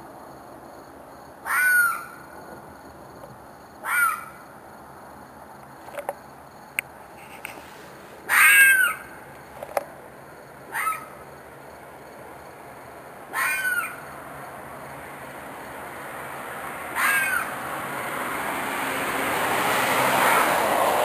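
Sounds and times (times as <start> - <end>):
animal harsh screeching call: 8.3 - 9.1, 10.7 - 11.1, 13.3 - 14.0, 17.0 - 17.5.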